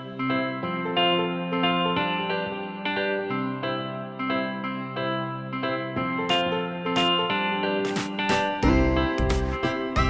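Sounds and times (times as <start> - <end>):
plucked instrumental melody: 6.3 - 10.0.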